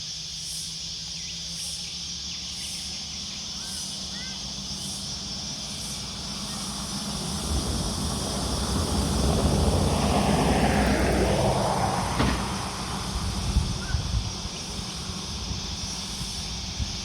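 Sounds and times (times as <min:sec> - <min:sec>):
vehicle passing by: 0:03.8 - 0:16.8.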